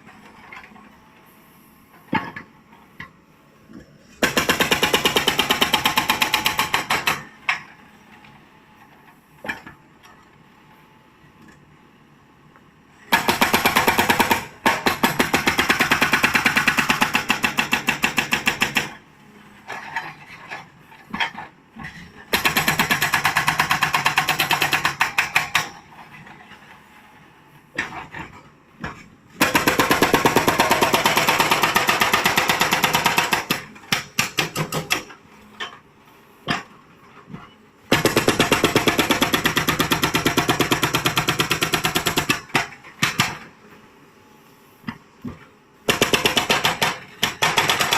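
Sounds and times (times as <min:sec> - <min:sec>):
hydraulic rock breaker hammering: 0:45.9 - 0:47.9.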